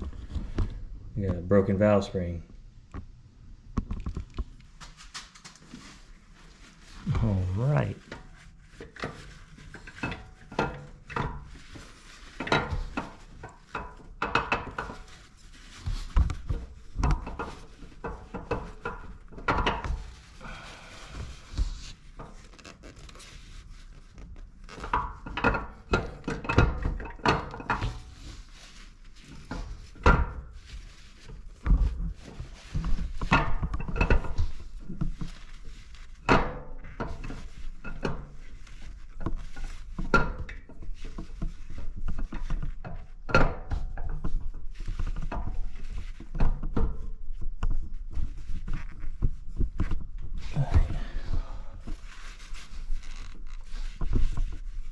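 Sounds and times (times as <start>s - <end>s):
heavy thuds: 50.4s - 51.8s.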